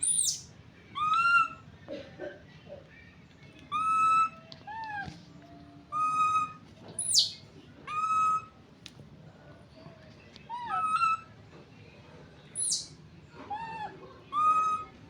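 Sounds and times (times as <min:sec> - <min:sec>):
baby monkey squealing calls: 0:00.0 - 0:00.4, 0:06.0 - 0:08.4, 0:12.6 - 0:12.9.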